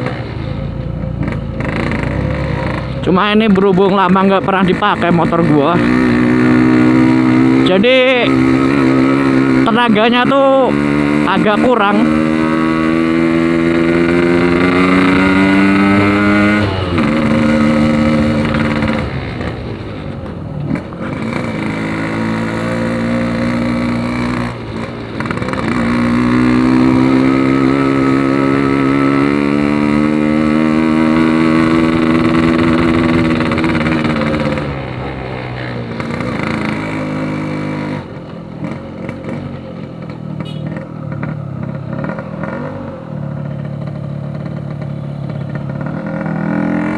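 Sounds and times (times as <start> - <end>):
two-stroke motorcycle engine revving: 0.0 - 46.9.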